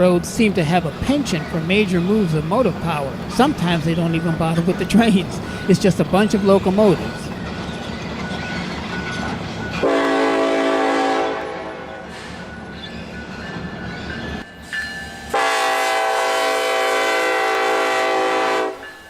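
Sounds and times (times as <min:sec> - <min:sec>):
moving train rumble: 0:00.0 - 0:19.0
locomotive air horn blasts: 0:09.8 - 0:12.1, 0:15.3 - 0:18.8.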